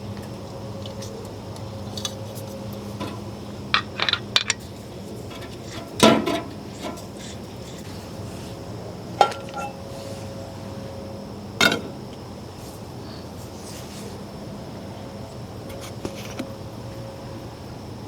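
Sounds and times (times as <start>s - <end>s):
metal cookware clanking: 5.3s - 7.2s, 9.2s - 9.9s, 11.6s - 12.0s.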